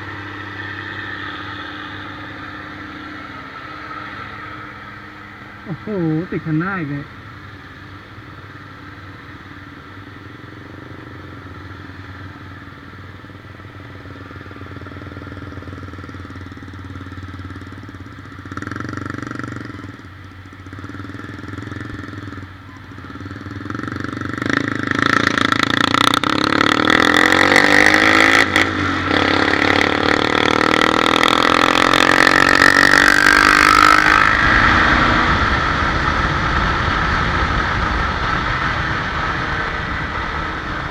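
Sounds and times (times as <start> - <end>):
motorcycle engine running: 0.0 - 40.9
loud rushing noise: 33.7 - 40.9.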